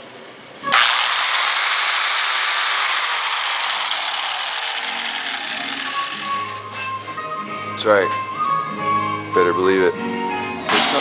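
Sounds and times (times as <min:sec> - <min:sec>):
electric grinder whirring: 0:00.7 - 0:06.7, 0:10.6 - 0:11.0.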